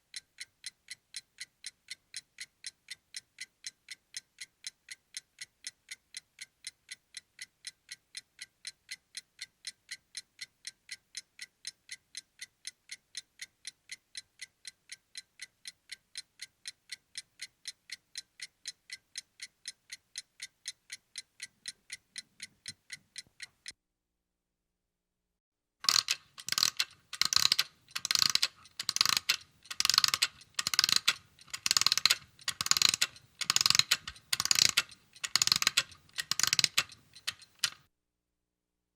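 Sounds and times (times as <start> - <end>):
alarm clock ticking: 0.0 - 23.8, 25.8 - 37.8.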